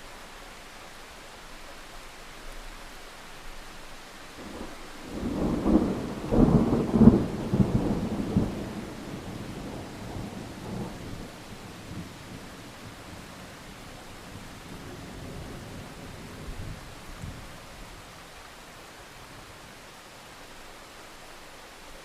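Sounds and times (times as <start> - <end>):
rain hiss: 0.0 - 22.0
thunder rumbling and cracking: 4.5 - 13.2.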